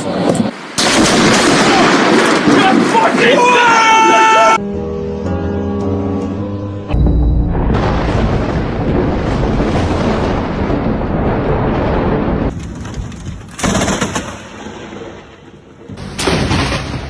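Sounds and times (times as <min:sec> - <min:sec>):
thunder rumbling: 0:00.0 - 0:03.0, 0:06.9 - 0:17.0
sharp thunder clap: 0:07.0 - 0:15.3.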